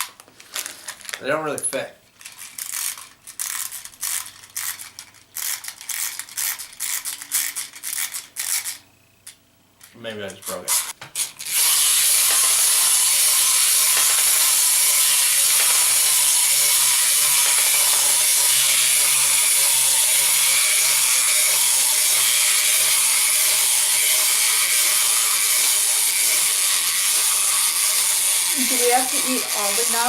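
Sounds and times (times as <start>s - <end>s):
wind-up toy ratcheting whir: 1.6s - 30.0s.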